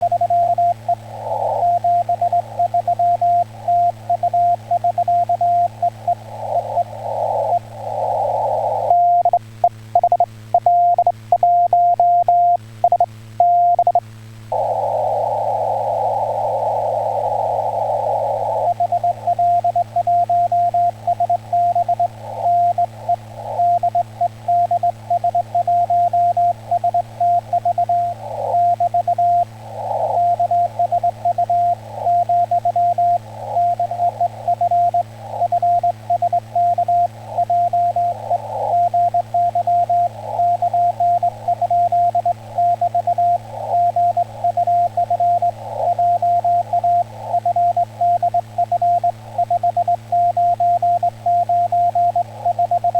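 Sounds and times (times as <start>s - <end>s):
radio receiver hiss: 0.0s - 52.9s
steady low hum: 0.0s - 52.9s.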